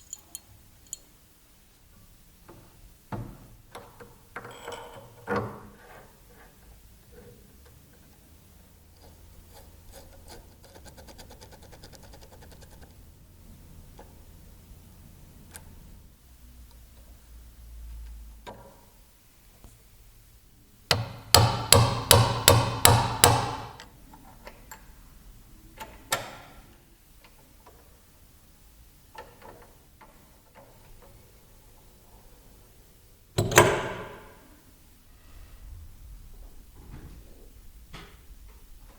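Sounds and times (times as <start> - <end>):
hammer strikes: 20.9 - 23.8.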